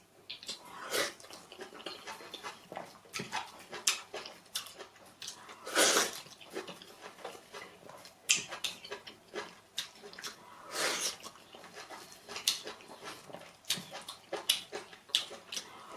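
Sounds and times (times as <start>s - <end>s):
lip smacks and clicks: 0.3s - 0.6s, 13.7s - 15.7s
wet chewing: 0.3s - 15.9s
loud slurps: 5.7s - 6.2s, 10.6s - 11.2s.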